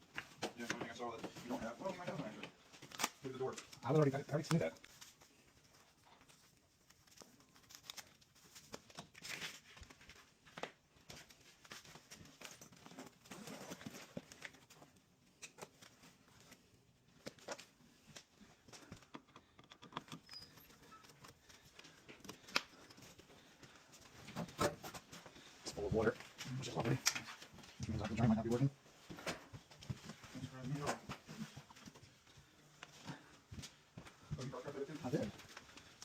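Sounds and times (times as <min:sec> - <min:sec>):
hands handling equipment: 0:06.2 - 0:27.8.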